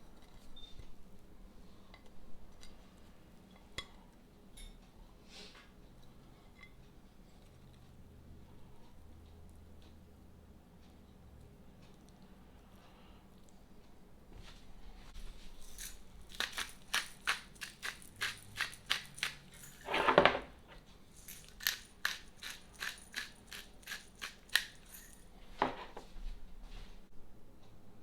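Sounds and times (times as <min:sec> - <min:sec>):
crackling and crunching food: 0:15.3 - 0:19.8, 0:20.9 - 0:25.2.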